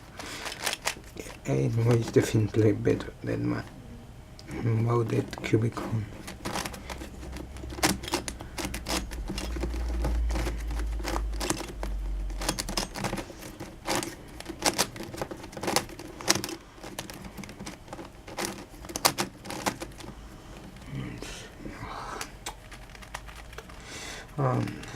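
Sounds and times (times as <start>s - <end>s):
plastic puzzle faces clicking: 6.2s - 20.1s.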